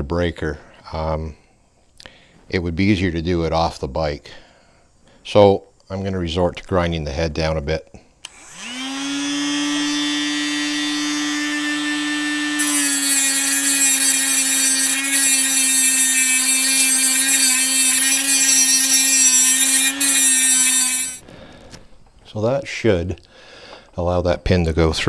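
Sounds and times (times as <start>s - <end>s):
grinder whining: 8.3s - 21.2s
metal grinding hiss: 12.6s - 21.2s.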